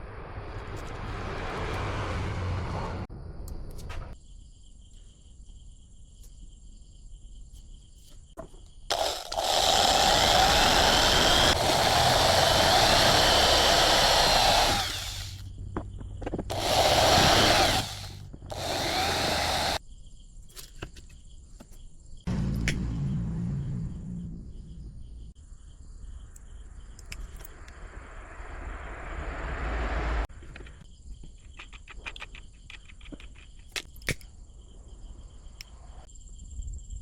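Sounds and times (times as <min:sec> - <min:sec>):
power tool running: 0:08.9 - 0:15.4, 0:16.5 - 0:19.8.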